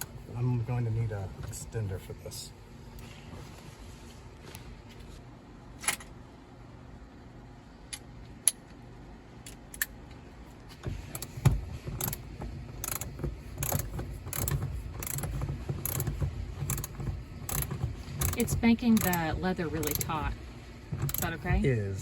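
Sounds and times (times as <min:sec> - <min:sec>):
low rumble of bolt turning: 0:10.8 - 0:21.6
ratchet wrench clicking: 0:12.0 - 0:12.2, 0:12.8 - 0:20.2, 0:21.0 - 0:21.4.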